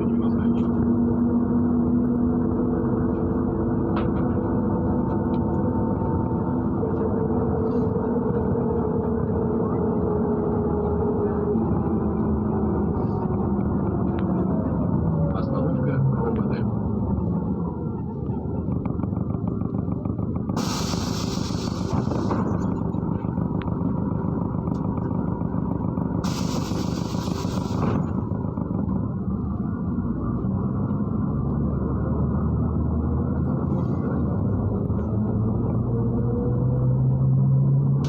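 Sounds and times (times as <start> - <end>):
bus engine and road noise: 0.0 - 38.0
compressed air hiss: 20.6 - 22.4, 26.2 - 28.1.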